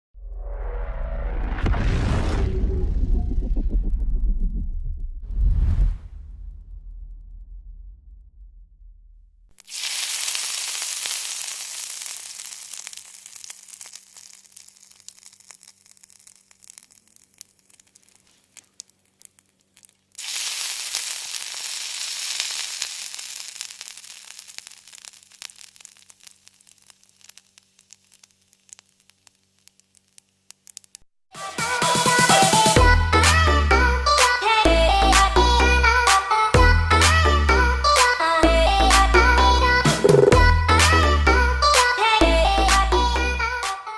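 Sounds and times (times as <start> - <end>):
food sizzling in hot oil: 9.6 - 31.0.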